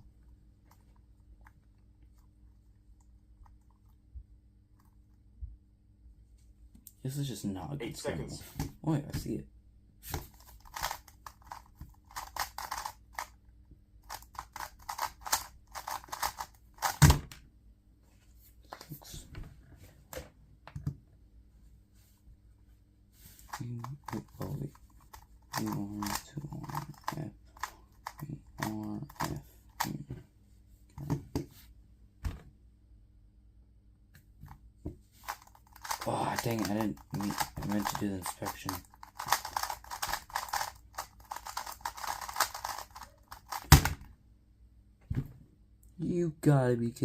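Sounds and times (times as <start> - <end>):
puzzle cube clicking: 10.6 - 13.3, 14.1 - 17.0, 23.5 - 30.0, 35.2 - 44.0.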